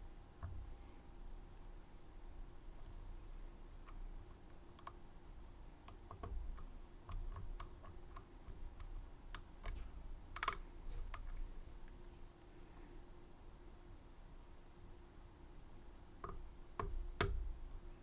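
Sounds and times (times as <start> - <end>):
lock-picking tools clicking: 5.8 - 12.1.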